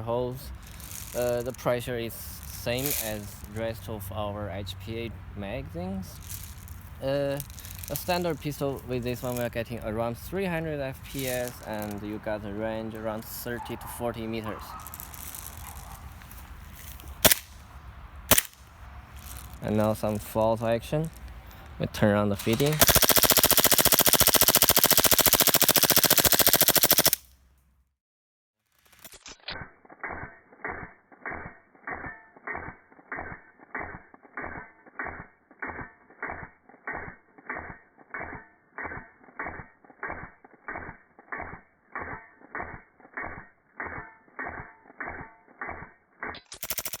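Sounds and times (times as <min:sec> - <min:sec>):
airsoft pistol full-auto burst: 0:18.3 - 0:18.6, 0:22.4 - 0:27.2, 0:46.6 - 0:47.0.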